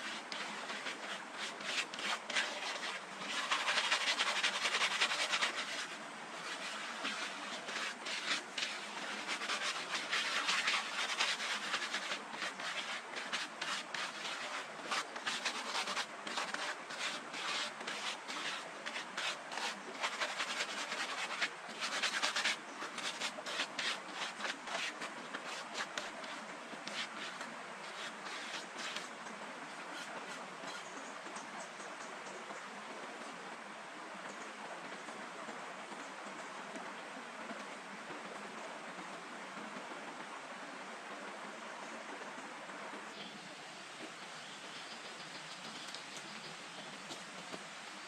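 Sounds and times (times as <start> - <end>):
hands rubbing and scraping soil: 0.0 - 31.0.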